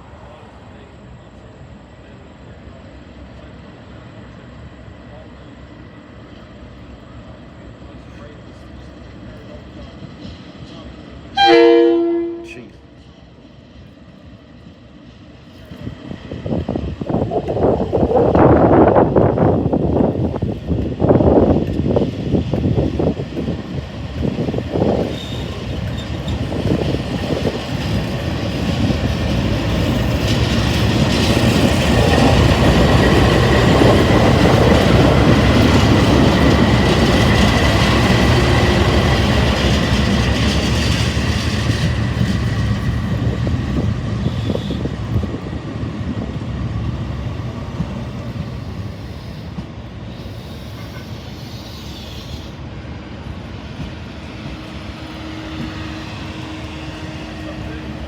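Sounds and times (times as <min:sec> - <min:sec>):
train wheels clacking over joints: 0:20.1 - 0:46.1
high wheel squeal: 0:25.1 - 0:26.4, 0:50.2 - 0:52.6.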